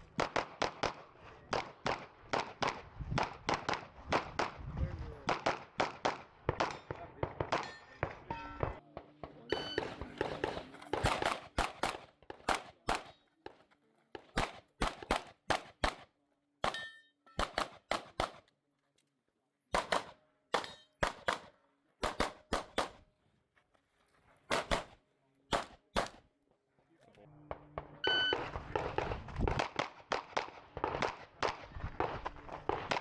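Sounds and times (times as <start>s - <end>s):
pistol shots: 0.1s - 4.6s, 5.2s - 13.6s, 14.2s - 18.4s, 19.7s - 23.0s, 24.5s - 26.2s, 27.5s - 33.0s.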